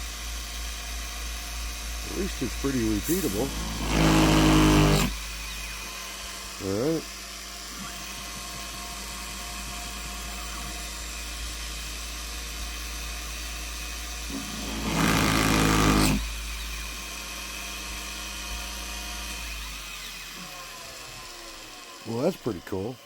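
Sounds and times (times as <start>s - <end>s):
drilling machine motors humming: 1.9s - 23.0s
drill bit plunging into workpiece: 3.0s - 5.3s, 14.3s - 16.4s.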